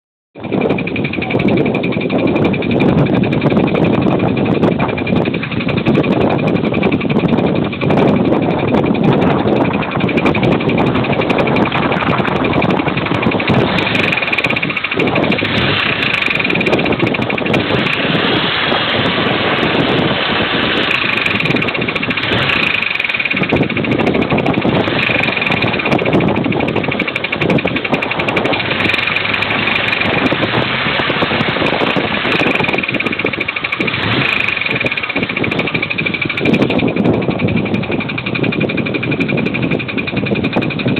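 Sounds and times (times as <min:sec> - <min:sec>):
car engine knocking: 0:00.4 - 0:40.9.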